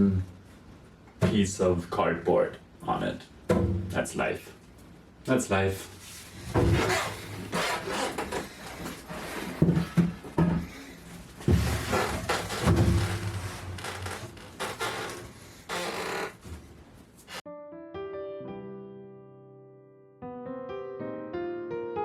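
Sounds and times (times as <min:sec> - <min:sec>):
knocks and scraping on workbench: 0:06.4 - 0:10.8, 0:11.4 - 0:14.6.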